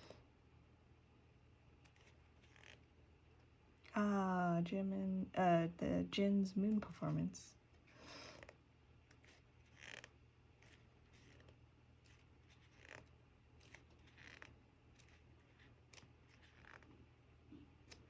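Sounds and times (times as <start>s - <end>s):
low steady hum: 0.0s - 18.0s
paper pages turning: 1.8s - 2.9s, 7.8s - 16.9s.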